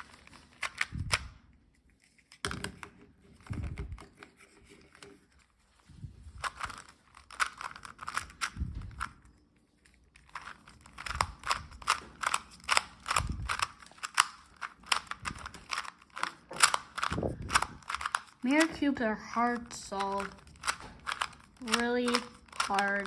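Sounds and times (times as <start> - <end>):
puzzle cube plastic clicks: 0.0 - 5.4, 6.3 - 23.0
dull knocks of cube handling: 10.4 - 18.3.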